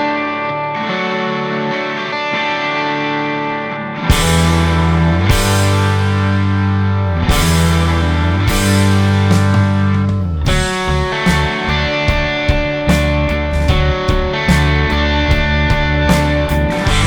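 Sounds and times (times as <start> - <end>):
rock music with guitar: 0.0 - 17.0
bass and drum hits: 4.1 - 17.0.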